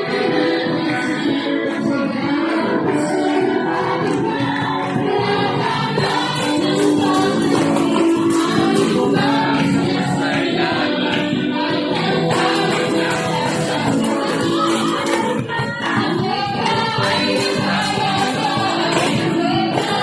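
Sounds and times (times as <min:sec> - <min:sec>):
congregation singing praise song: 0:00.0 - 0:20.0
instrumental backing: 0:00.0 - 0:20.0.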